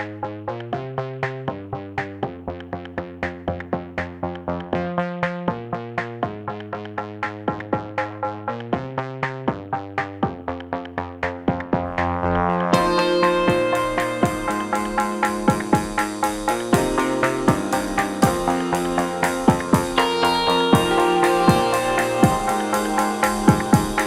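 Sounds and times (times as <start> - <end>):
electronic dance music: 11.5 - 24.0.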